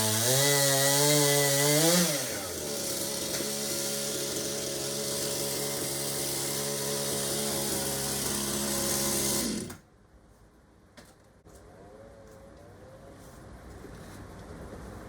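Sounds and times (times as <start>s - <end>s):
chainsaw running: 0.0s - 9.8s.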